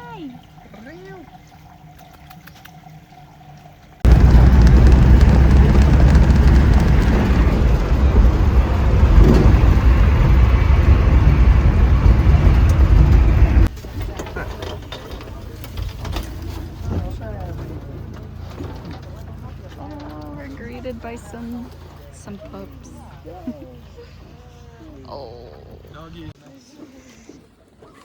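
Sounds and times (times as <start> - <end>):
loud rushing rumble: 4.0 - 13.7.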